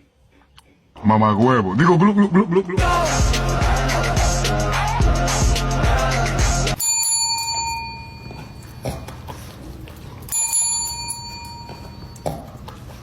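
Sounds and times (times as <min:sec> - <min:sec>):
small bell ringing: 0:06.8 - 0:08.8, 0:10.3 - 0:12.3.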